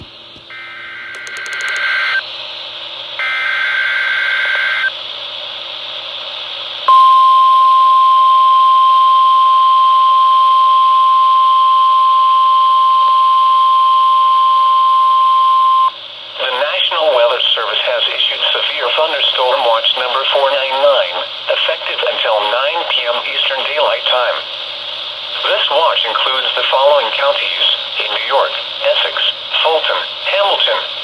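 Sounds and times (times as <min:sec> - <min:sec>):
steady warning alarm tone: 0:00.5 - 0:02.2
data tone bursts: 0:01.2 - 0:02.2
radio hiss: 0:16.4 - 0:31.0.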